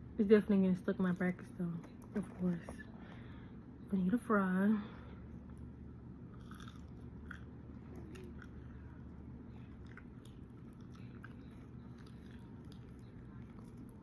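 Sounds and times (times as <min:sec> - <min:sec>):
low steady hum: 0:00.0 - 0:14.0
person chewing crunchy food: 0:06.3 - 0:14.0.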